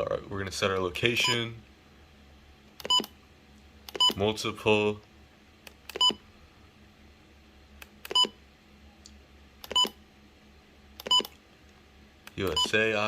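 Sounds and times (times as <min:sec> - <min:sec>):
keypad beeps: 0:02.8 - 0:03.1, 0:03.9 - 0:04.2, 0:05.9 - 0:06.2, 0:08.1 - 0:08.4, 0:09.7 - 0:10.0, 0:11.0 - 0:11.4, 0:12.5 - 0:12.8.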